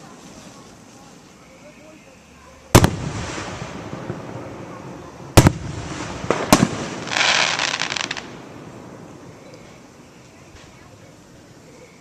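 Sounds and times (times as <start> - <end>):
fireworks bangs: 2.7 - 9.9
firework crackling: 2.7 - 11.4.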